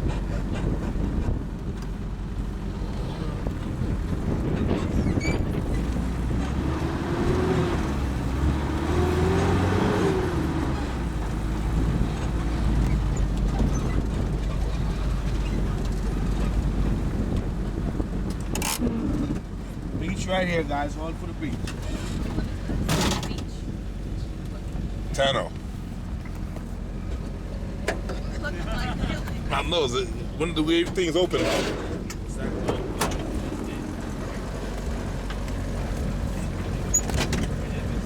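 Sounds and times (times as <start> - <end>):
vehicle rumble in motion: 0.0 - 38.0
wind buffeting microphone: 0.0 - 38.0
engine tone rising and falling: 5.8 - 12.8.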